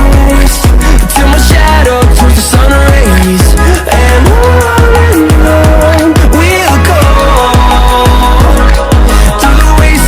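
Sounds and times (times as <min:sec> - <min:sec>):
electronic pop music: 0:00.0 - 0:10.0.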